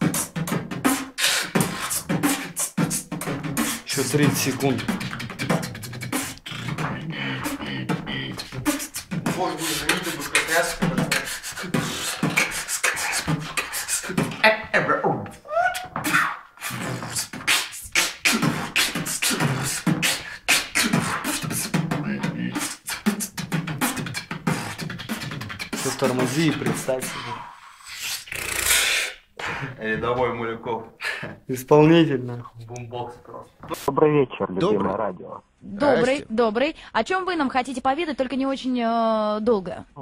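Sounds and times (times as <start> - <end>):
person beatboxing: 0.0 - 29.8.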